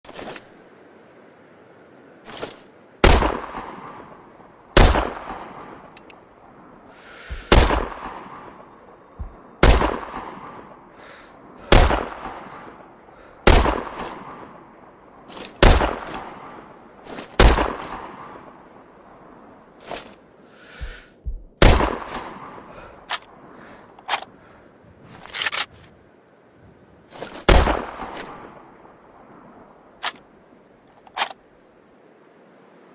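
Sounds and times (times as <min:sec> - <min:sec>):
rifle shots with echoing tail: 0:03.0 - 0:03.9, 0:04.8 - 0:05.8, 0:07.3 - 0:08.5, 0:09.2 - 0:10.7, 0:11.7 - 0:12.5, 0:13.4 - 0:14.4, 0:15.6 - 0:16.4, 0:17.4 - 0:18.2, 0:21.6 - 0:22.6, 0:27.5 - 0:28.2.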